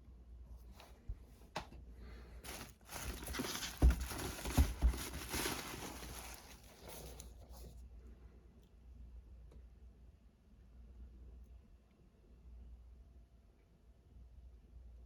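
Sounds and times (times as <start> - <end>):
packaging rustling: 2.4 - 7.3.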